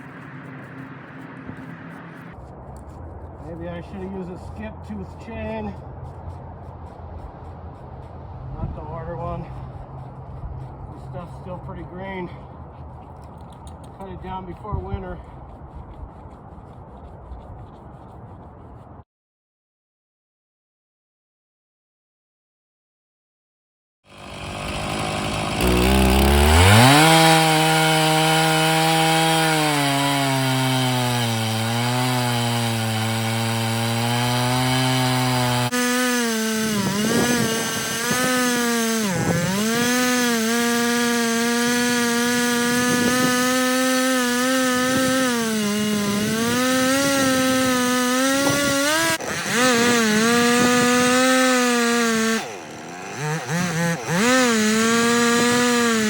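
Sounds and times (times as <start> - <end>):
chainsaw cutting log: 8.9 - 17.1, 24.1 - 56.0.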